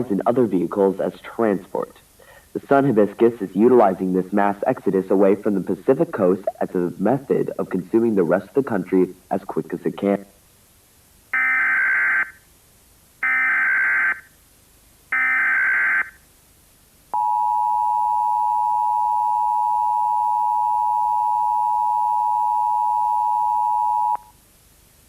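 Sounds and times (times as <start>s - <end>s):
two-tone attention signal: 17.2s - 24.3s.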